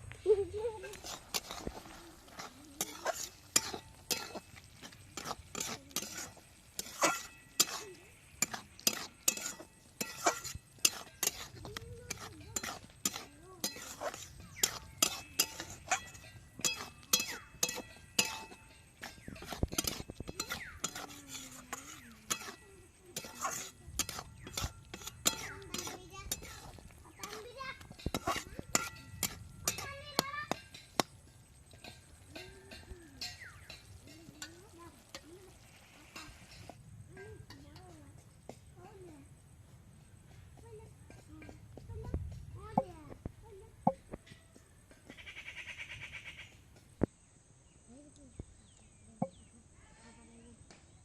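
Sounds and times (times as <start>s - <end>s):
metal utensils clinking on pots: 0.8s - 38.7s.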